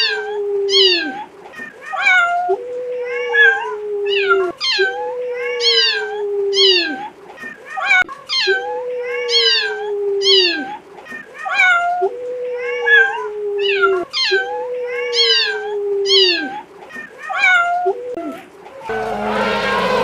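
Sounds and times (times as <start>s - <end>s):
animal calling: 17.3s - 20.0s.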